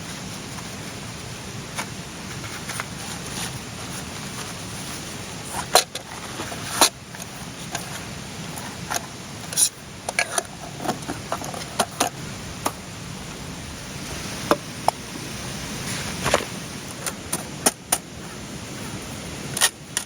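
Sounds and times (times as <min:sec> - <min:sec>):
camp gear clicking and clinking: 0:01.7 - 0:12.8, 0:15.9 - 0:20.0.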